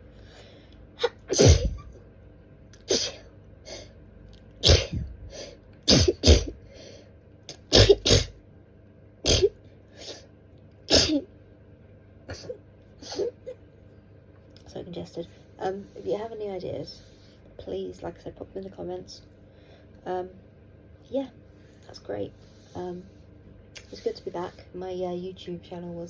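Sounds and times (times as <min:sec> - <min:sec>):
woman sneezing: 0:01.0 - 0:02.0, 0:02.8 - 0:03.9, 0:04.6 - 0:05.2, 0:05.9 - 0:06.6, 0:07.5 - 0:08.4, 0:09.2 - 0:10.2, 0:10.9 - 0:11.3, 0:12.3 - 0:13.5.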